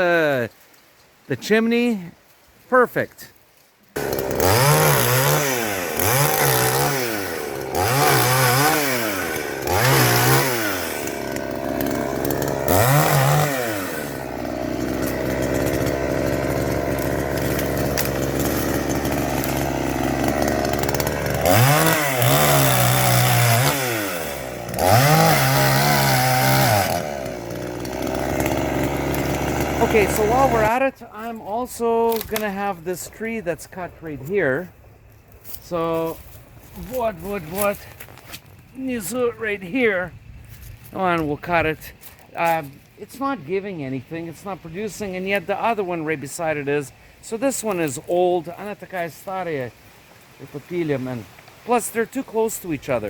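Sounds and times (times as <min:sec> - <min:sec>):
chainsaw revving: 0:04.0 - 0:34.7, 0:35.6 - 0:39.8.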